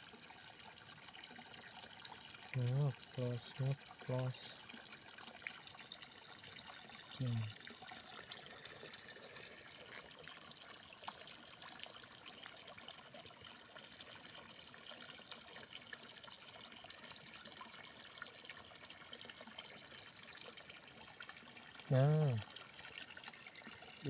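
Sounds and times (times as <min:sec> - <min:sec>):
faint trickling water: 0:00.0 - 0:24.0
brief low voice: 0:02.6 - 0:04.5, 0:07.2 - 0:07.5, 0:21.9 - 0:22.4.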